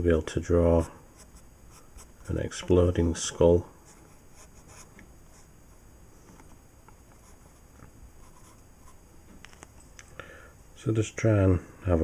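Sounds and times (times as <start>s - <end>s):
pencil scratching on paper: 3.8s - 5.5s, 8.2s - 9.0s.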